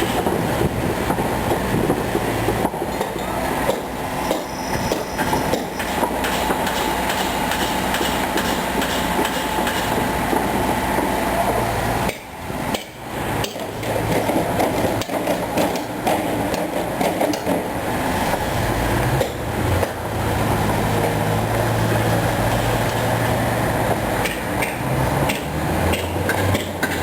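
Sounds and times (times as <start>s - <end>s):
rapid metallic clatter and knocking: 2.6s - 10.0s.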